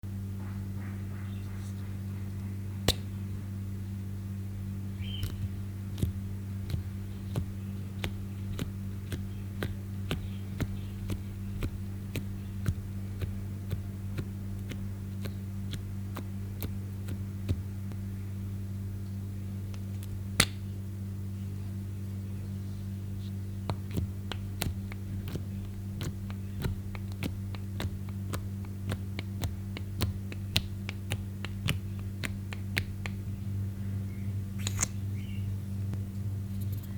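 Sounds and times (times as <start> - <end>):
low mains hum: 0.0 - 36.9
slime sticky clicks and pops: 19.7 - 20.6.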